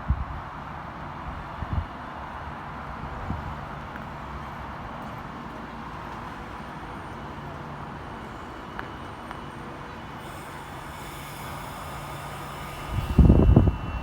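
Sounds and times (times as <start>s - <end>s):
hiss: 10.2s - 14.0s.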